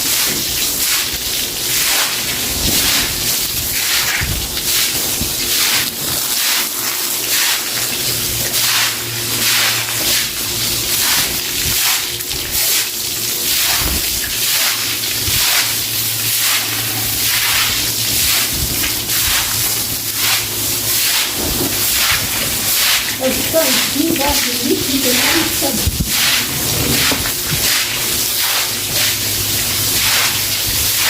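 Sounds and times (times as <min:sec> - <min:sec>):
stiff broom scrubbing wet floor: 0:00.0 - 0:31.0
water sloshing: 0:01.3 - 0:31.0.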